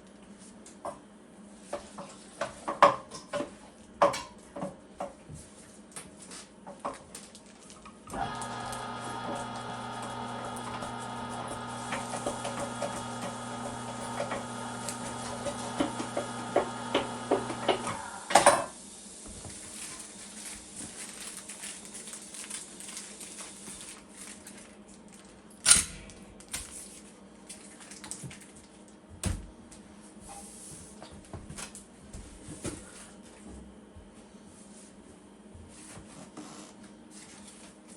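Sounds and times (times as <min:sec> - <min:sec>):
meat grinder motor humming: 0:08.1 - 0:18.4.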